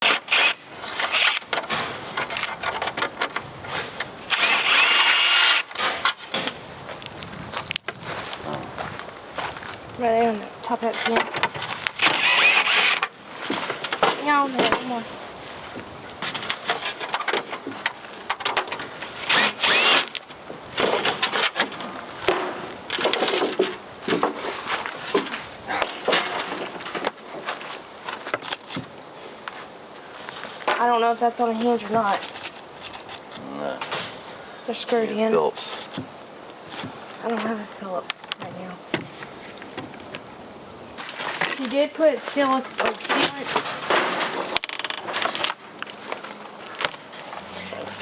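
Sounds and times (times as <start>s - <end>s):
power drill running: 0.0s - 1.4s, 4.3s - 5.8s, 12.0s - 13.1s, 19.2s - 20.1s
metal scraping on wood: 0.0s - 6.6s, 10.7s - 15.2s, 16.2s - 28.9s, 41.0s - 45.6s.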